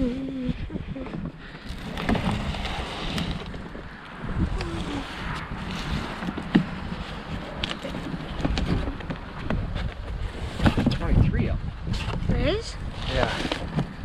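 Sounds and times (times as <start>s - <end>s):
wind buffeting microphone: 0.0s - 14.0s
rustling and clicks: 1.0s - 11.0s.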